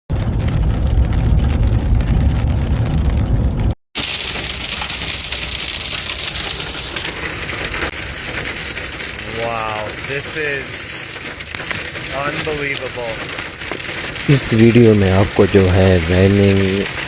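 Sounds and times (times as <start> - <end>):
heavy low rumble: 0.1 - 3.8
rain and hail patter: 0.1 - 17.0.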